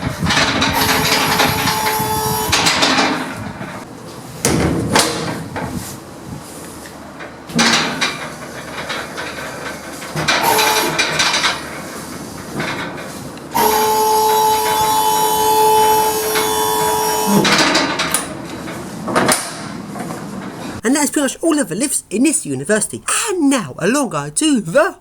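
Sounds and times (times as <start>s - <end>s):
lift doors clunking and rattling: 0.0s - 20.8s.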